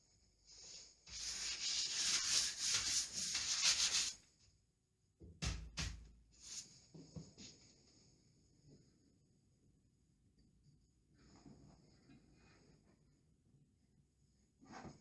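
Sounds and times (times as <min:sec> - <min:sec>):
brisk rubbing strokes: 0:01.1 - 0:04.2.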